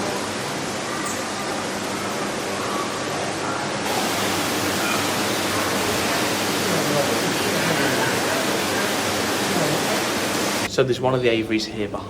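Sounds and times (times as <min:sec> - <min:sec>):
steady rushing noise: 0:03.8 - 0:10.7.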